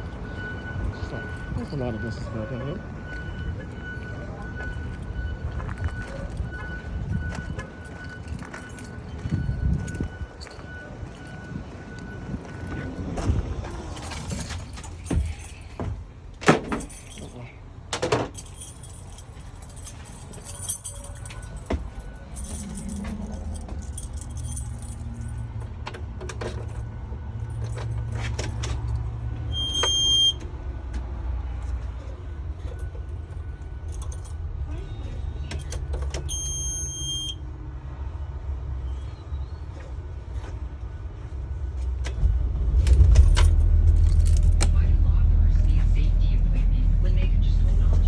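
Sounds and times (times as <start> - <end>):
bus engine rumble: 0.0 - 48.0
body rattling: 12.6 - 17.4, 18.3 - 25.6, 41.9 - 45.1
high electronic beep: 29.5 - 30.4.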